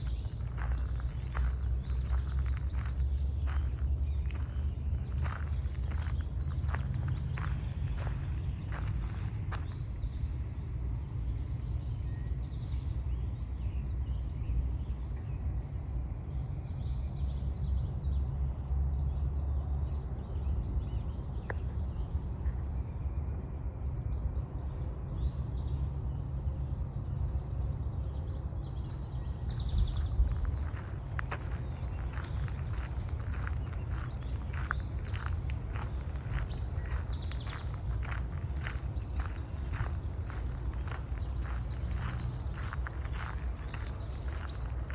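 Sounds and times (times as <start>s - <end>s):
low rumble: 0.0s - 9.8s, 29.5s - 44.9s.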